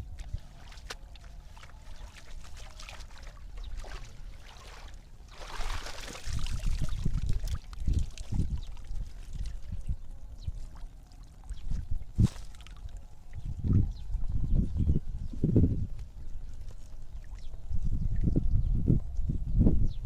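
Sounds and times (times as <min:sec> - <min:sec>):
water splashing and sloshing: 0:00.0 - 0:13.8.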